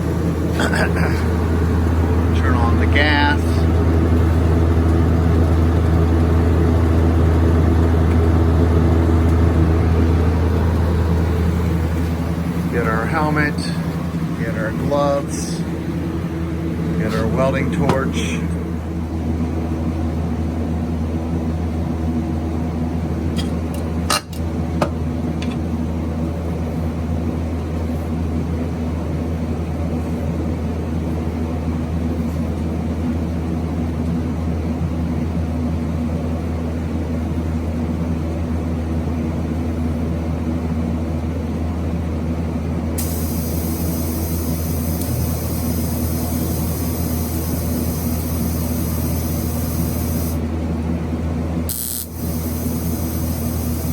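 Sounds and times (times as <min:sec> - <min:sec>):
welding machine electrical hum: 0:00.0 - 0:53.9
high even hiss: 0:43.0 - 0:50.4, 0:51.7 - 0:53.9.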